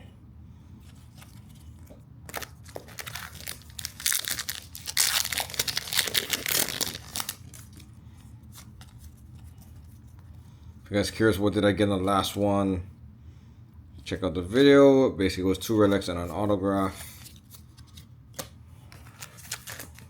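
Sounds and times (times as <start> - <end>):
packaging crinkling and tearing: 2.3 - 7.9, 19.0 - 20.0.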